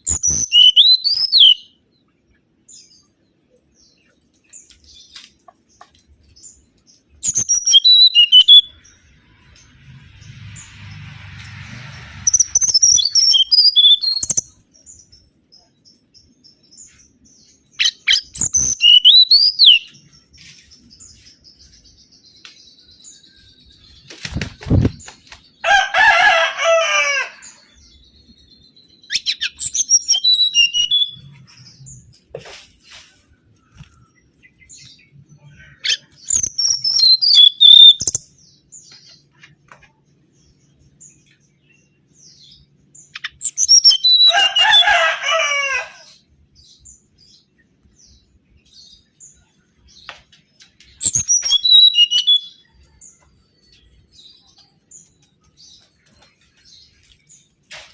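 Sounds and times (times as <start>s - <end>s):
bird song whistles and chatter: 0.0s - 1.8s, 7.2s - 10.9s, 12.2s - 16.0s, 17.7s - 21.8s, 28.4s - 32.1s, 33.7s - 39.2s, 42.3s - 45.1s, 50.8s - 53.2s.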